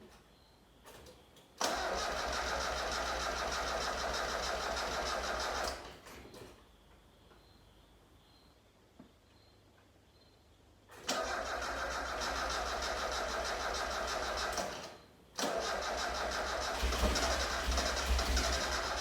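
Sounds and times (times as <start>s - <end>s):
car engine cranking: 1.6s - 5.9s, 11.1s - 19.0s.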